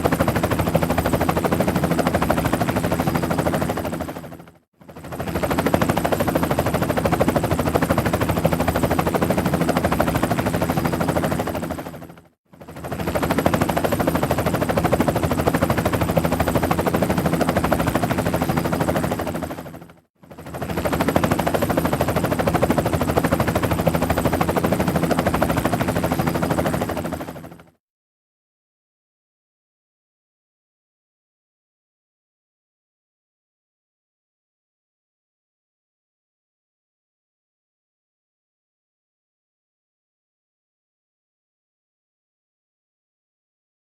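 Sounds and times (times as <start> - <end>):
helicopter rotor chop: 0.0 - 27.7
helicopter engine drone: 0.0 - 27.8.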